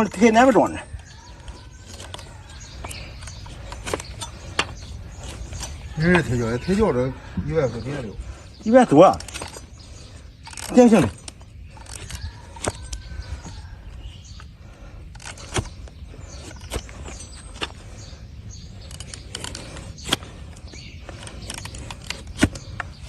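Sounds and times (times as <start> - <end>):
hoof knife scraping hoof: 14.8 - 23.0.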